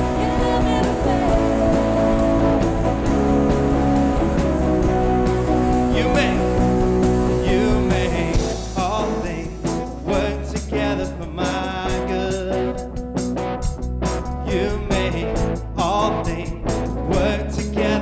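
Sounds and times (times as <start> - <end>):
sustained instruments: 0.0 - 10.2
person singing: 0.0 - 12.8, 14.4 - 18.0
steady low bass: 0.0 - 18.0.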